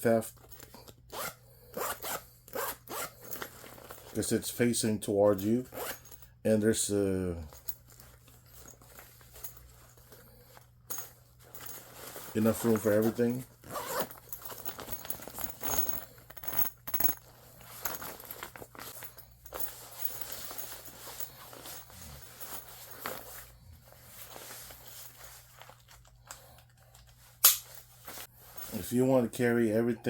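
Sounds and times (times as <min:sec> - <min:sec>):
fabric bag rustling: 0:03.0 - 0:04.2, 0:07.5 - 0:28.9.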